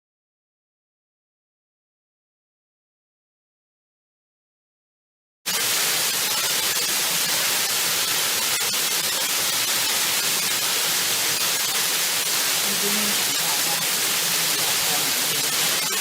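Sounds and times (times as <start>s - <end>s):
waterfall rushing and splashing: 5.6s - 16.0s.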